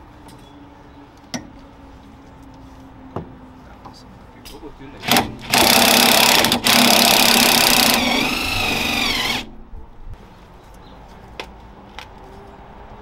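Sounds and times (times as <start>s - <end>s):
impact wrench rattling and whining: 5.0s - 9.6s.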